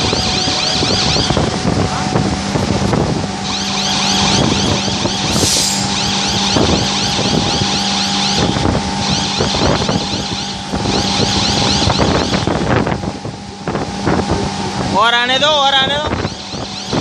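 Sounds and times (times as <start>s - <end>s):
high rising whine: 5.0s - 7.4s
short hiss: 5.3s - 6.0s.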